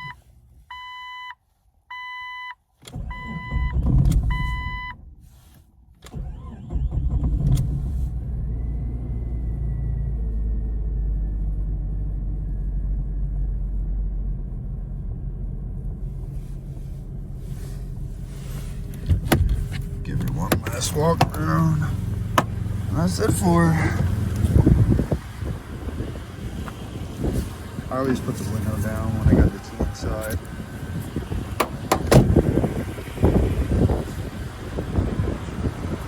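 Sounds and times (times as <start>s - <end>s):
engine cranking: 6.0s - 8.0s, 16.1s - 36.0s
engine idling: 11.5s - 36.0s.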